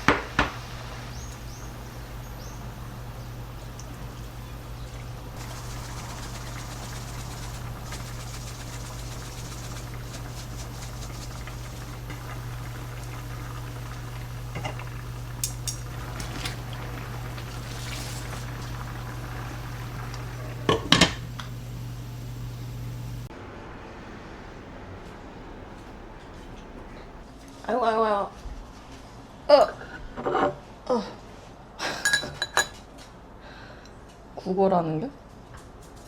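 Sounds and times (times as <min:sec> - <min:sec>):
food boiling in a pot: 0:00.0 - 0:27.3
steady low hum: 0:00.0 - 0:27.5
utensils clinking: 0:00.1 - 0:21.6
dishes clattering: 0:11.2 - 0:21.5, 0:32.0 - 0:32.8.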